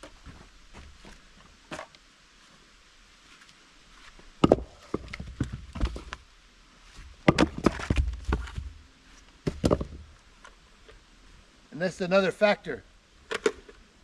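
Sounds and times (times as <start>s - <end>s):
dull thumps and knocks: 4.4s - 6.2s, 7.2s - 8.7s, 9.4s - 10.1s.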